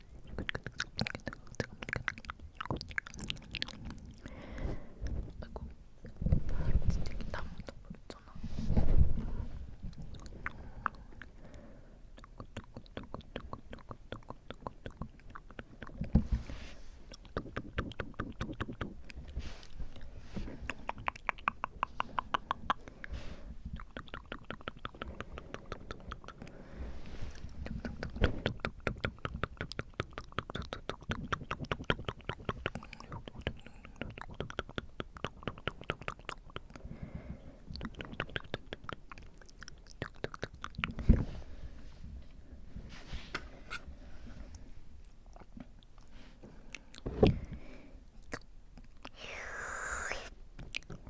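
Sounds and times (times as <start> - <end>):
tongue and lip clicks: 0.0 - 4.3, 9.9 - 11.4, 12.1 - 16.3, 17.1 - 26.6, 27.4 - 36.9, 37.6 - 41.2, 48.2 - 51.0
breaths blowing on microphone: 49.2 - 50.3.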